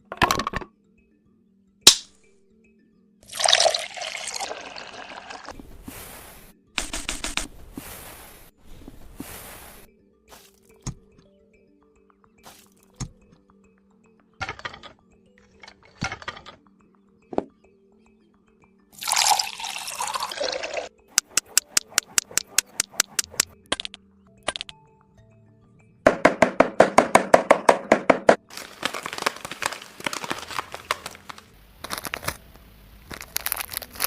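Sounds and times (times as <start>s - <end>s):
loose material pouring: 3.3s - 6.5s, 19.0s - 20.9s, 28.5s - 32.3s
quick taps and scrapes: 21.1s - 24.0s.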